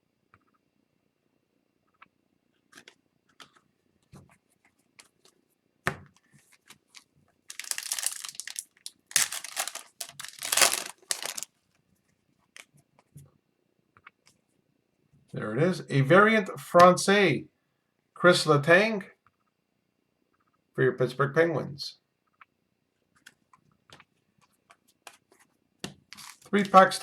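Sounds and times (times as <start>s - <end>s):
card pack wrapper tearing: 7.5s - 11.5s, 26.2s - 26.5s.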